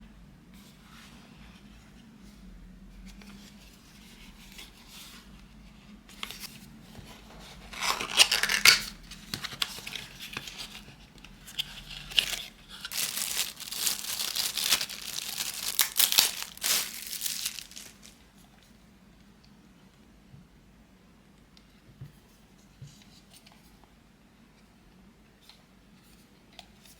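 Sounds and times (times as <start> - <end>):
packaging tearing and crinkling: 7.7 - 10.8, 11.5 - 18.2.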